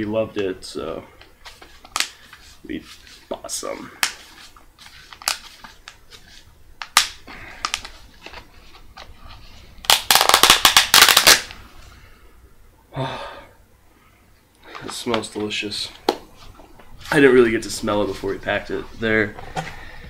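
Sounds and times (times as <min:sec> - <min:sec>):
plastic packaging crackling: 0:04.0 - 0:09.1, 0:09.8 - 0:11.6
plastic packaging clicking: 0:06.8 - 0:08.4, 0:09.8 - 0:11.5.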